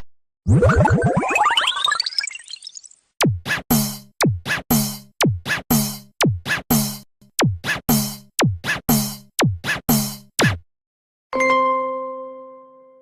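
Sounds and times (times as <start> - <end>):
deep kick drum: 3.2 - 10.6
snare hits: 3.2 - 10.6.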